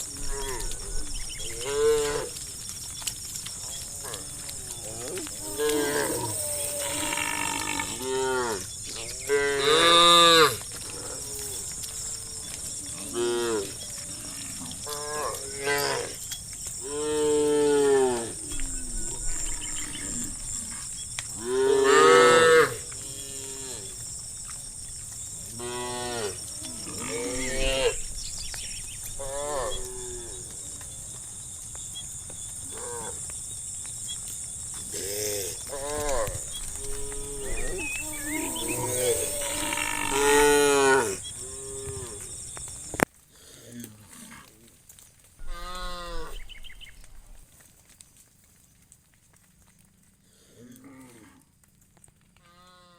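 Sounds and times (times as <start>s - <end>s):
cows mooing: 0.1s - 2.4s, 3.8s - 16.2s, 16.8s - 24.0s, 29.1s - 30.6s, 34.9s - 42.2s, 45.4s - 46.4s.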